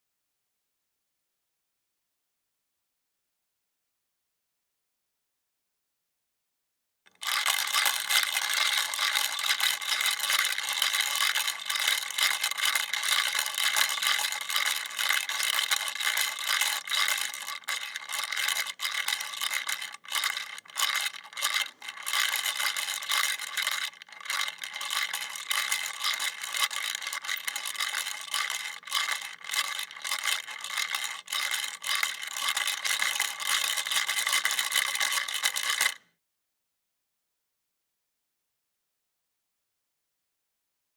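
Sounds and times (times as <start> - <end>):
pencil sharpener grinding pencil: 7.1 - 36.0.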